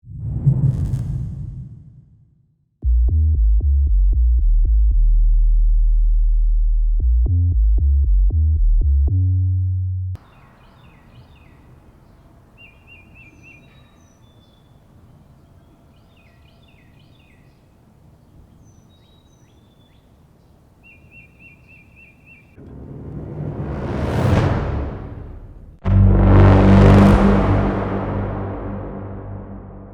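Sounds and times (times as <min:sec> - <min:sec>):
synth bass pattern: 0:02.8 - 0:10.1, 0:25.8 - 0:29.9
birds chirping: 0:10.2 - 0:22.6.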